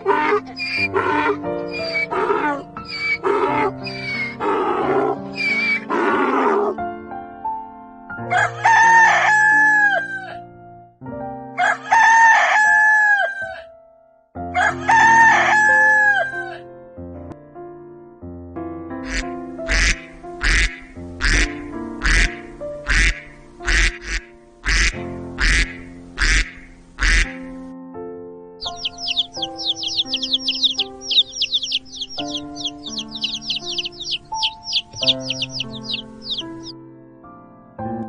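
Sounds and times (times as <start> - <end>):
background music: 0.0 - 38.0
short animal calls: 5.4 - 5.9
rooster crowing: 8.3 - 10.4, 11.6 - 13.6, 14.6 - 16.6, 29.1 - 36.4.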